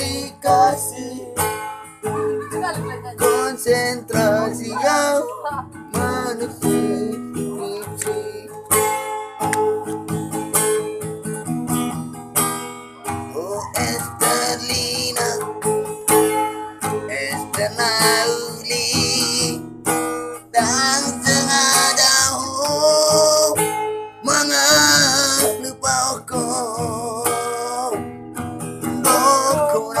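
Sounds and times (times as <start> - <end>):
person singing with vibrato: 0.0 - 8.7, 13.3 - 15.6, 29.0 - 30.0
strummed acoustic guitar: 0.0 - 30.0.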